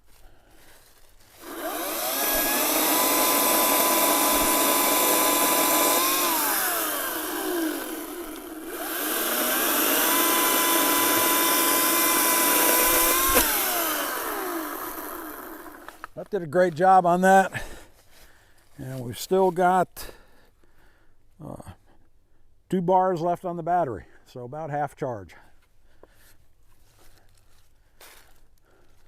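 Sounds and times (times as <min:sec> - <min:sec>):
electric chainsaw motor whining: 0:01.3 - 0:16.2.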